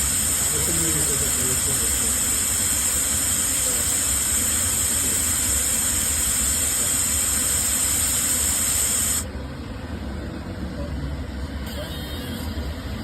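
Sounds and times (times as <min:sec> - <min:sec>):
sandblaster air hissing: 0:00.0 - 0:09.2.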